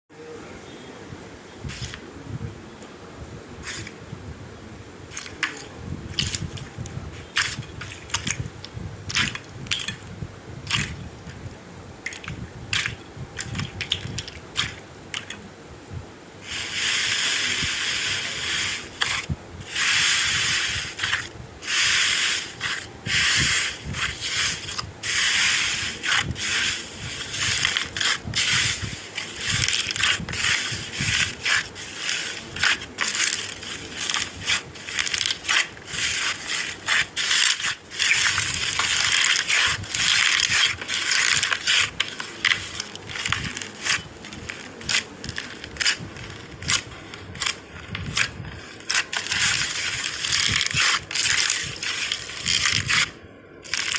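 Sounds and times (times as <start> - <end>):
slime squelching and popping: 9.1 - 10.0.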